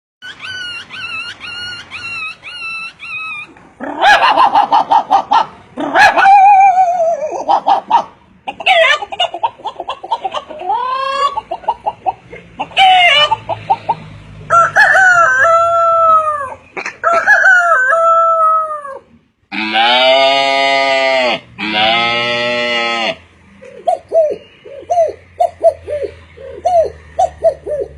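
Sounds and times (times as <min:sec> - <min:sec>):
man imitating animal calls: 0:18.4 - 0:23.2.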